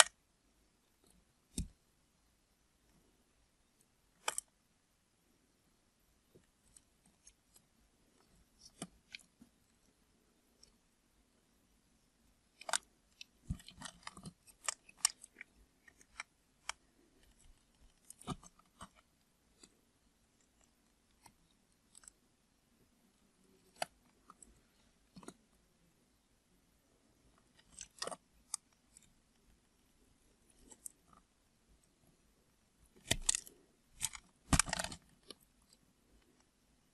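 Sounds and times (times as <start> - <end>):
blade cutting dry soap: 32.9 - 35.8.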